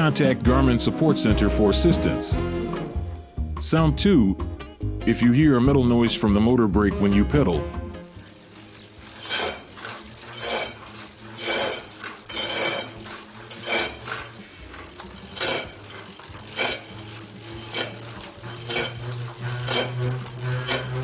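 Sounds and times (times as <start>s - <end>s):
bike trainer metallic scraping: 6.4s - 21.0s.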